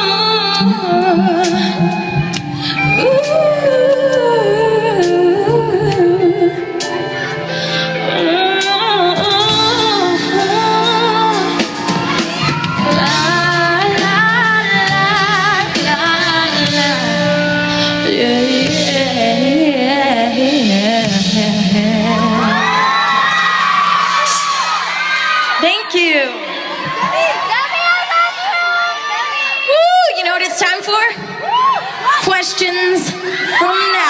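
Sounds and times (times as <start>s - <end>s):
woman singing: 0.0s - 23.3s
keyboard and band chords: 0.0s - 28.4s.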